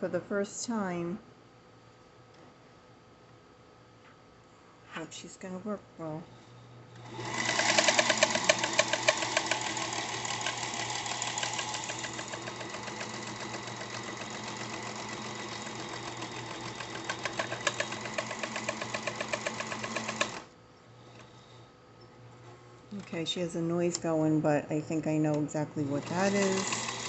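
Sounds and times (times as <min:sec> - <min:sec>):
sewing machine stitching: 0:07.0 - 0:20.5, 0:25.9 - 0:27.0.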